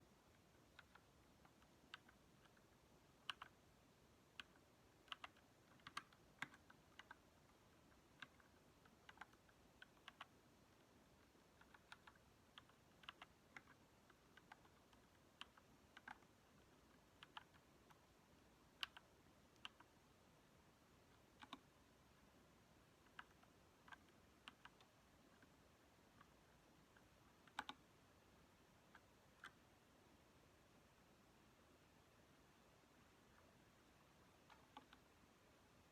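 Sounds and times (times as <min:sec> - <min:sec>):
mechanical keyboard keystrokes clicking: 0:04.4 - 0:07.2.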